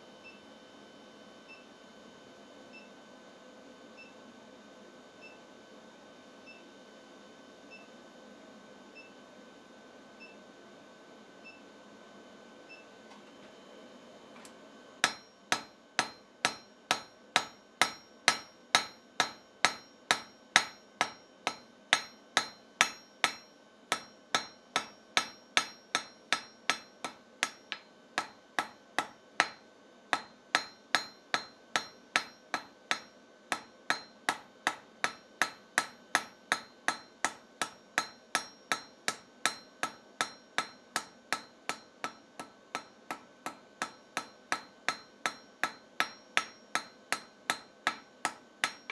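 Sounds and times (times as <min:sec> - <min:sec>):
hammer striking steel on anvil: 0:15.0 - 0:48.9.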